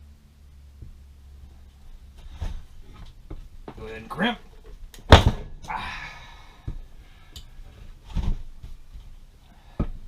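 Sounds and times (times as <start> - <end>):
person breathing with effort: 5.6 - 7.8, 9.4 - 10.0.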